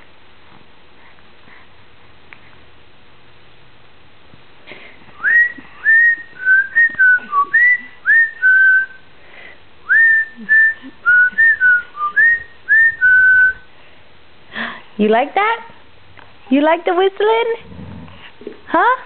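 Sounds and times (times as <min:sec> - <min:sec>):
person whistling a melody: 0:05.2 - 0:09.0, 0:09.8 - 0:13.7.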